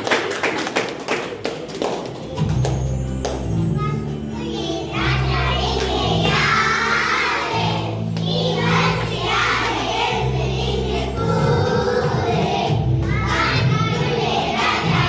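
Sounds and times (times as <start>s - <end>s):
children singing: 4.2s - 15.0s.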